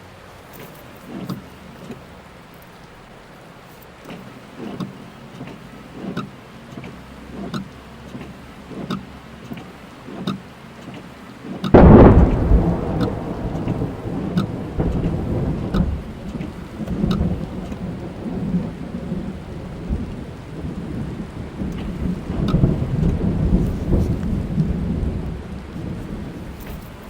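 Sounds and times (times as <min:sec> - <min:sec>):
rain hitting car: 0:00.0 - 0:27.0
sharp raindrop ticks: 0:00.4 - 0:27.0
thunder clap and rumble: 0:11.6 - 0:27.0.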